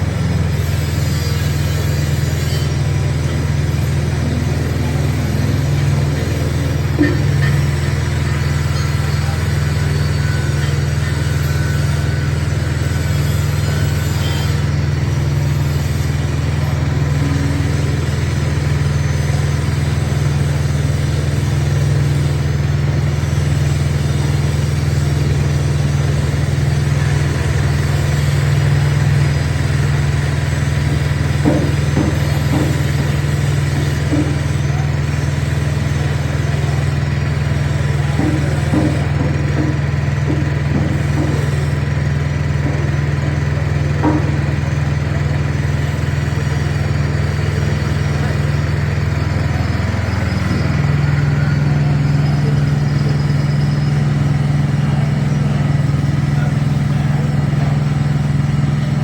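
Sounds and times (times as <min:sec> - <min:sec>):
small petrol engine running: 0:00.0 - 0:59.0.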